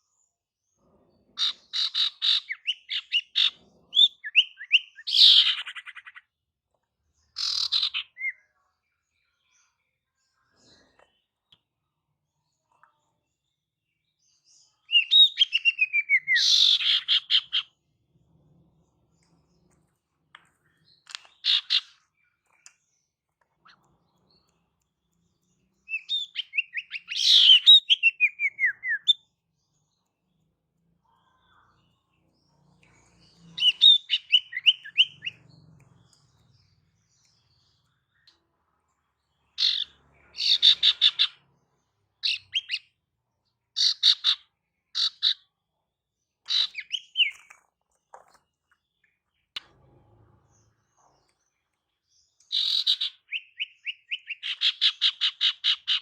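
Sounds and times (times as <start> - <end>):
bird calling with chirp trills: 1.4 - 6.3, 7.4 - 8.6, 14.8 - 17.8, 20.8 - 22.8, 25.6 - 29.4, 32.9 - 38.5, 39.5 - 41.5, 42.2 - 43.0, 43.8 - 45.5, 46.4 - 47.5, 52.4 - 56.0.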